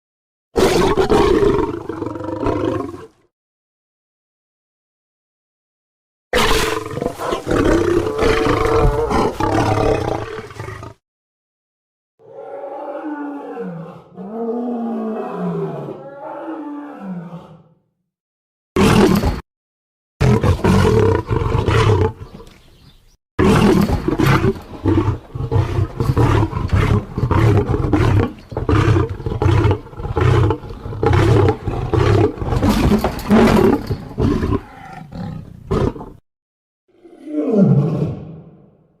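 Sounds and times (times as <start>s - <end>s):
lion growls and roars: 0.6s - 3.3s, 6.4s - 11.0s, 12.2s - 17.9s, 18.8s - 19.4s, 20.2s - 22.6s, 23.4s - 36.2s, 36.9s - 38.8s.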